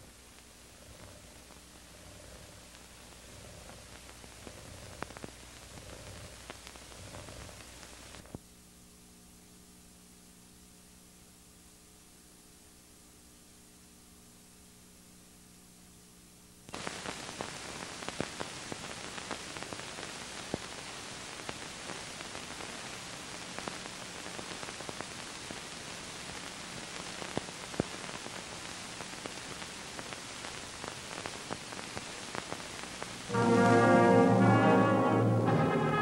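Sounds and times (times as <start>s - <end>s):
faint low hum: 0.0s - 17.3s
film soundtrack hiss with crackles: 0.0s - 36.0s.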